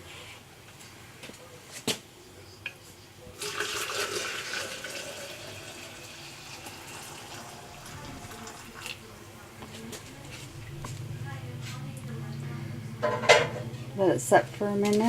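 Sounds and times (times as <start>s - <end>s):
water pouring from kettle: 3.4s - 9.1s.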